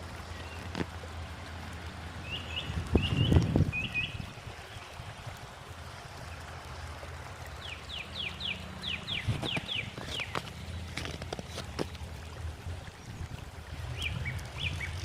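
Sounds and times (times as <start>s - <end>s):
small bird calling: 7.6s - 11.2s
steady low rumble: 11.9s - 15.0s.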